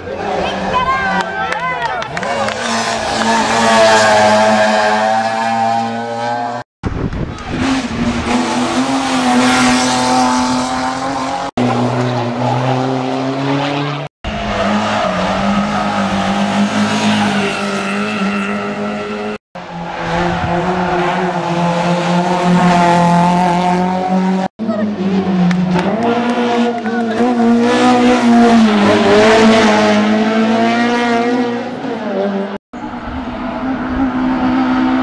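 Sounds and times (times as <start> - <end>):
rally car engines revving high: 0.0 - 35.0.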